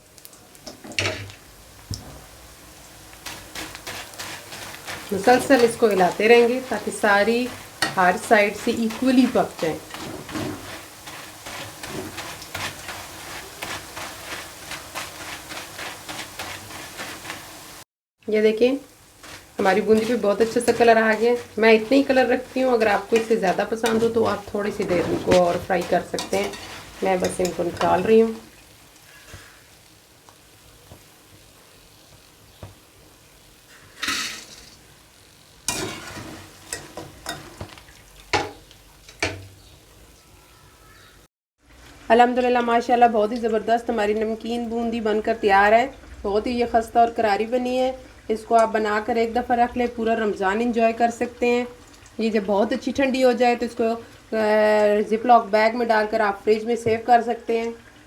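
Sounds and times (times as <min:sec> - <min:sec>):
food sizzling in hot oil: 0:00.0 - 0:58.0
spoon scraping pan: 0:03.2 - 0:17.8, 0:19.1 - 0:28.4, 0:35.7 - 0:37.8.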